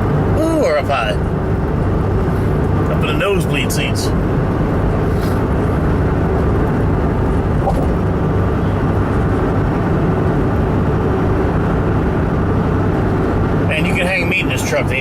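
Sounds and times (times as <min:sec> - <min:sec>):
low engine hum: 0:00.0 - 0:15.0
tyre and wind noise: 0:04.4 - 0:11.0.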